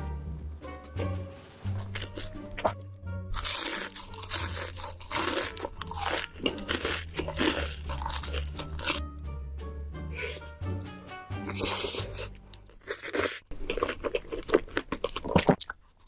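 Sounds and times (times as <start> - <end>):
background music: 0.0 - 13.3
person crunching crisp food: 1.7 - 9.0, 11.5 - 16.0.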